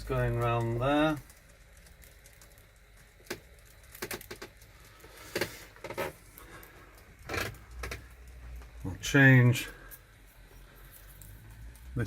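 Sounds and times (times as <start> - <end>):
faint steady low hum: 0.0 - 12.0
light sharp clicks and knocks: 0.2 - 8.9.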